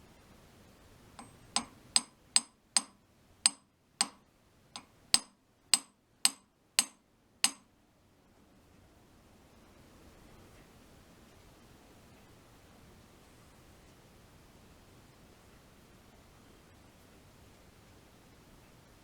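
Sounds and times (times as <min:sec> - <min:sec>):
hammer tapping on steel: 0:01.2 - 0:04.2, 0:04.8 - 0:07.6.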